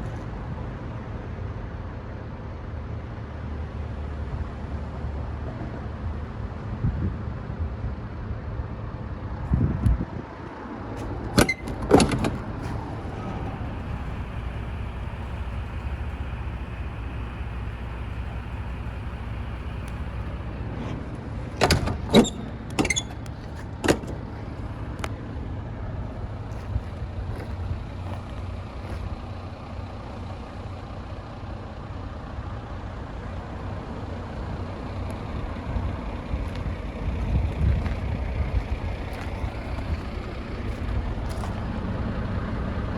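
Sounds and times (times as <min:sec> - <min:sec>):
diesel truck engine idling: 0:10.6 - 0:42.9
sharp clunks: 0:11.0 - 0:12.9, 0:19.9 - 0:24.3.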